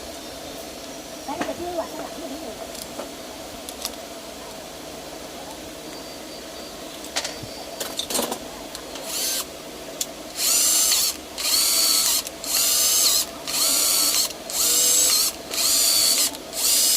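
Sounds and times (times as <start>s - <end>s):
cordless drill motor whine: 9.0s - 9.5s, 10.3s - 16.9s
drill clicks: 10.3s - 16.9s.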